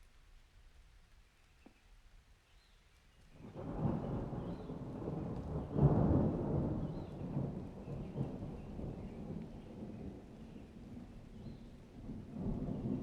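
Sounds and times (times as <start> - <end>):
thunder rumble and crack: 3.4 - 13.0.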